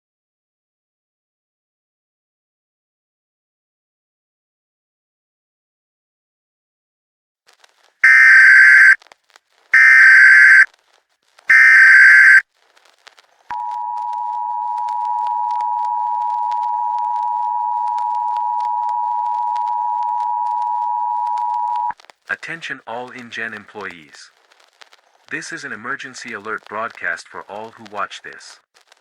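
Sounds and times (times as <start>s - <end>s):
buzzy data bursts: 8.0s - 9.0s, 9.8s - 10.7s, 11.5s - 12.4s.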